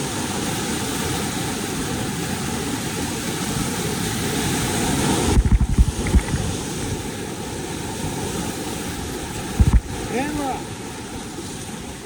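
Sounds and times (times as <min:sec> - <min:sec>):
low thumps on microphone: 0:05.2 - 0:06.6, 0:09.5 - 0:10.0
whitewater rushing through dam gate: 0:06.2 - 0:12.0.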